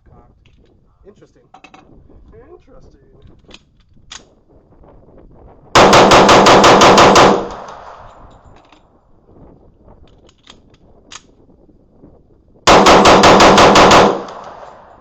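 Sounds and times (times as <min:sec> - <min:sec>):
rapid gunshots echoing: 0:05.8 - 0:08.1, 0:12.7 - 0:15.0.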